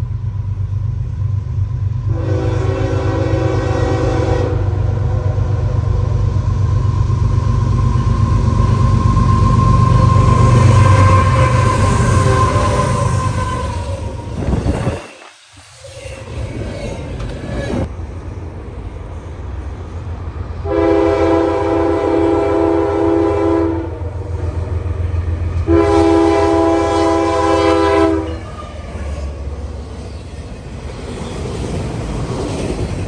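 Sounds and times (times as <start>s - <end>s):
train passing rumble: 0.0s - 33.0s
locomotive air horn blasts: 2.1s - 5.4s, 9.7s - 14.1s, 20.6s - 24.2s, 25.6s - 28.6s.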